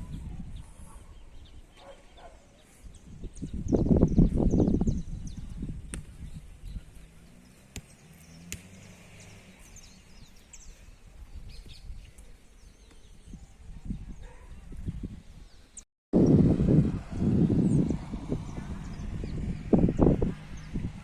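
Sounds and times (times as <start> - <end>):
small birds chirping: 0.0 - 16.4
wind gusts: 0.0 - 21.0
low outdoor rumble: 16.2 - 21.0.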